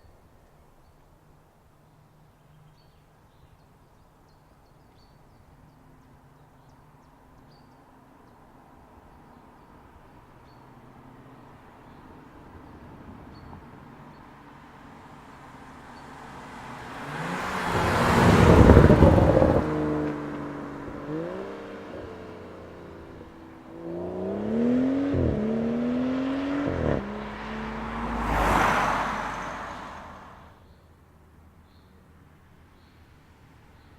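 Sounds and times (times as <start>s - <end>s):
car passing by: 15.2s - 21.9s, 23.6s - 30.6s
car engine revving: 16.7s - 30.5s.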